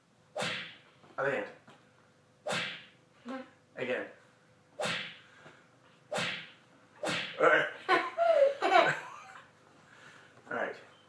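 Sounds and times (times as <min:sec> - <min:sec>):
sharp smacking hits: 0:00.4 - 0:00.8, 0:02.5 - 0:02.9, 0:04.8 - 0:05.2, 0:06.1 - 0:07.4.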